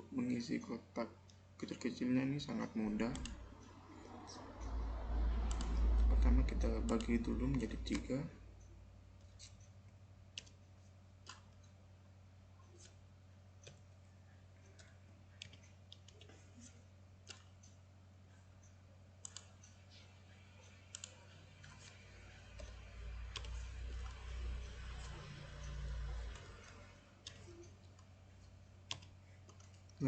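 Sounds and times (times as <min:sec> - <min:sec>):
steady low hum: 0:00.0 - 0:30.0
computer mouse and keyboard clicks: 0:02.9 - 0:11.8, 0:12.6 - 0:13.0, 0:13.6 - 0:13.9, 0:14.6 - 0:17.8, 0:18.6 - 0:20.0, 0:20.6 - 0:30.0
low rumble: 0:03.2 - 0:07.8.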